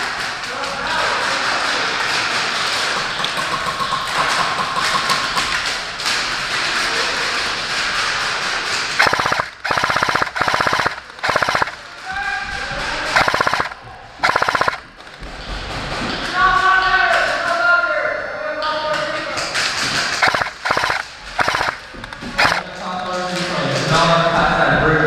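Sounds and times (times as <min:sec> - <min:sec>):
steady background noise: 0:00.0 - 0:25.0
airsoft gun full-auto bursts: 0:09.0 - 0:11.9, 0:13.1 - 0:14.9, 0:20.1 - 0:22.7.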